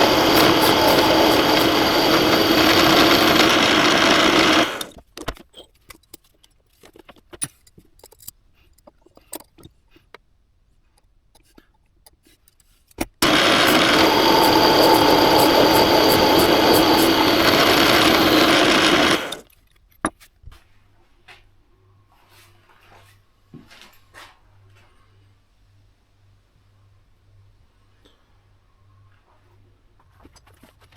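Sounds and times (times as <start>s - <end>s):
power tool running: 0.0s - 5.0s, 13.2s - 19.5s.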